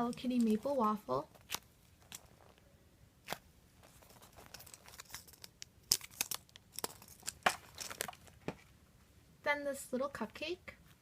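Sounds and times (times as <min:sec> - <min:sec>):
foam toy crinkling: 0:00.0 - 0:08.7.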